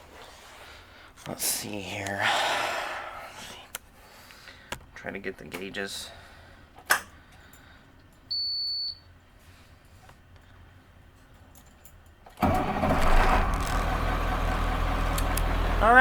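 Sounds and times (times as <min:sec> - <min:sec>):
bus engine starting and running: 0:12.4 - 0:16.0
click: 0:15.2 - 0:15.5.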